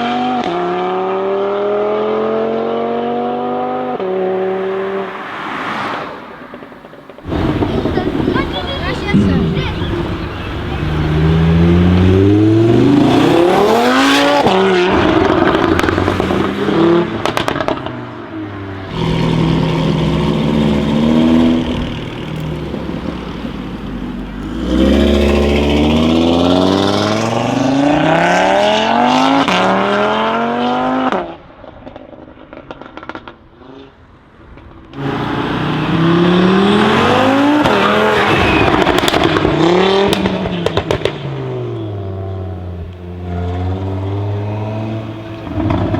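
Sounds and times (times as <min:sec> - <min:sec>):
car engine revving and accelerating: 0:00.0 - 0:06.2, 0:07.2 - 0:31.4, 0:35.0 - 0:45.9
exhaust crackles and pops: 0:06.5 - 0:11.7, 0:14.9 - 0:16.6, 0:17.2 - 0:18.0, 0:37.4 - 0:41.6, 0:45.3 - 0:45.9.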